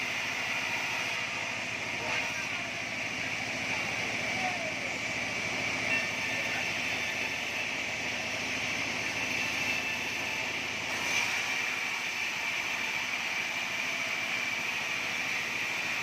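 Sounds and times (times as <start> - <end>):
band sawmill running: 0.0 - 16.0
constant high-pitched tone: 0.4 - 10.6.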